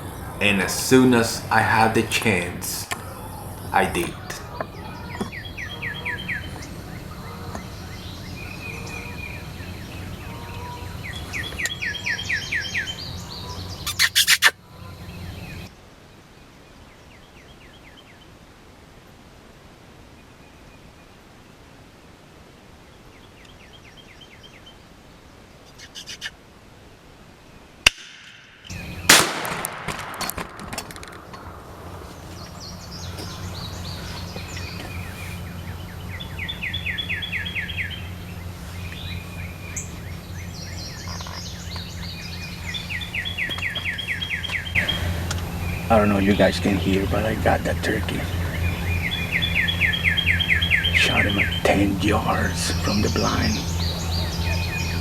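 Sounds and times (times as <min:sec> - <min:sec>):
songbirds chirping: 0:00.0 - 0:18.5, 0:22.8 - 0:27.7, 0:28.6 - 0:29.4, 0:30.8 - 0:55.0
loud sharp bangs: 0:29.0 - 0:31.6.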